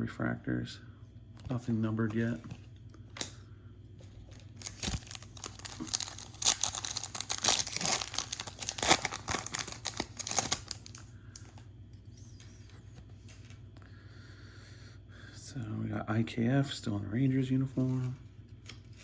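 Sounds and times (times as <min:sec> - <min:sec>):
foil wrapper tearing and crinkling: 0:04.2 - 0:11.0.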